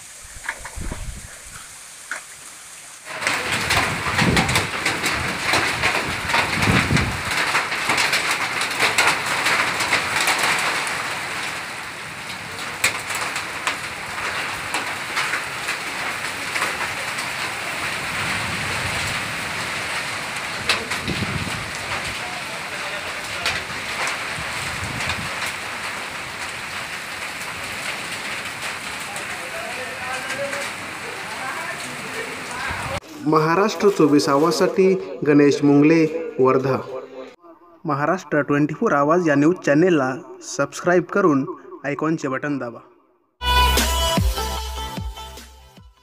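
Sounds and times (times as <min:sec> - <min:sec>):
heavy rain and hail pelting: 0:00.0 - 0:34.9.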